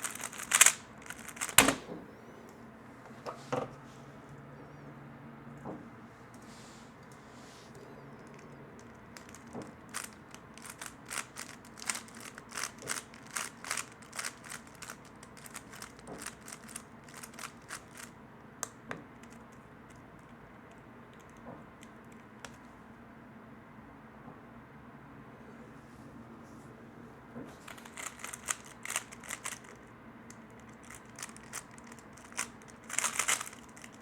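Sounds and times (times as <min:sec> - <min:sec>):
puzzle cube plastic clicks: 0:00.0 - 0:02.2, 0:08.2 - 0:22.6, 0:27.7 - 0:34.0.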